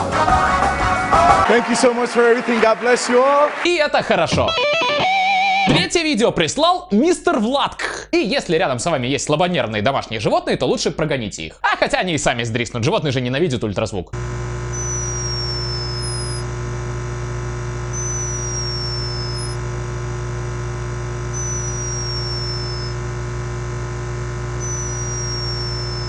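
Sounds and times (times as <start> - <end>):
microphone hum: 14.2 - 26.0
hummingbird snoring whistle: 14.7 - 16.5, 17.9 - 19.6, 21.3 - 23.0, 24.6 - 26.0.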